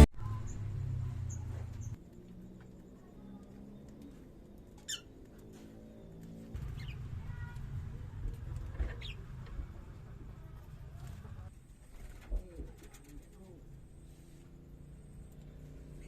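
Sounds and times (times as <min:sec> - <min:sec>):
bird chirping: 0:03.6 - 0:07.6, 0:08.8 - 0:09.3.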